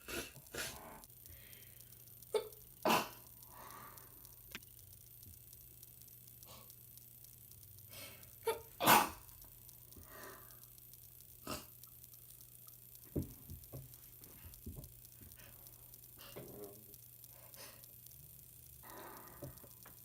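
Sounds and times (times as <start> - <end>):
person breathing: 1.2 - 2.0, 3.4 - 4.3, 10.0 - 10.6, 17.3 - 17.9, 18.8 - 19.8.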